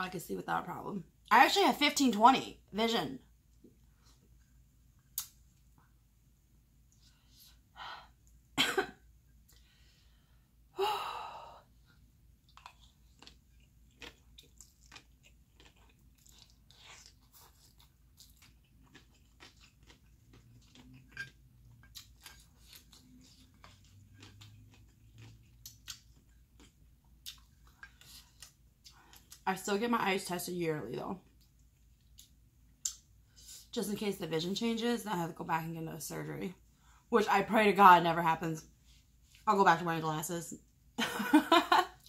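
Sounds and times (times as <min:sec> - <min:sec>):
chewing noodles: 0:12.4 - 0:29.4.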